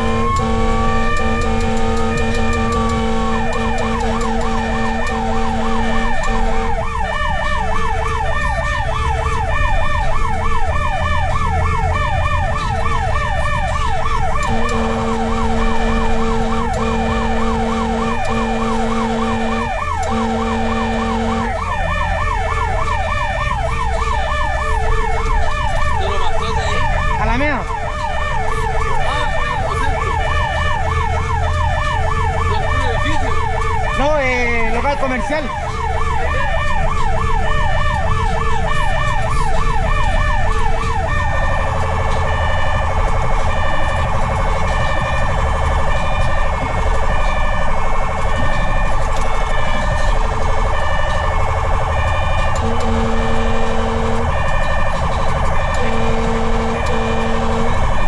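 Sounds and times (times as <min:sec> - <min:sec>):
horn blasts: 0:00.0 - 0:07.0, 0:14.4 - 0:21.8, 0:52.0 - 0:58.0
electronic siren yelping: 0:00.0 - 0:58.0.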